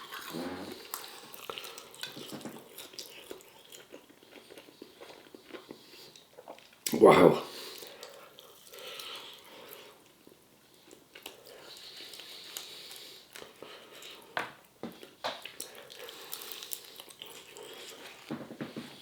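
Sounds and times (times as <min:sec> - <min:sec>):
person chewing crispy food: 0:00.0 - 0:18.4.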